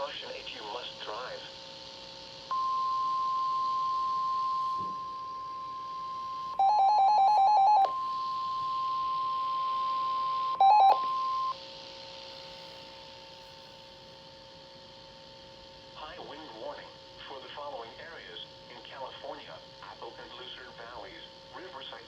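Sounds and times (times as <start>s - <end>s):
fainter steady tone: 2.3s - 14.2s
pulsed electronic alert beeping: 2.5s - 11.5s
steady high electronic tone: 2.5s - 11.6s.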